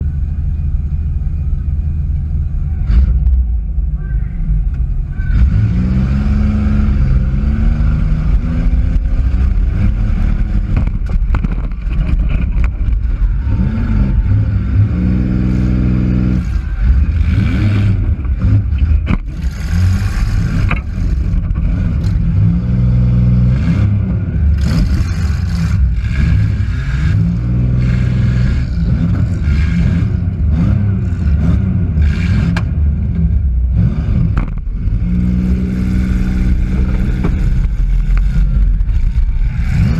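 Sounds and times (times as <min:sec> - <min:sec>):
car engine revving hard: 0:05.2 - 0:12.2, 0:13.0 - 0:39.9.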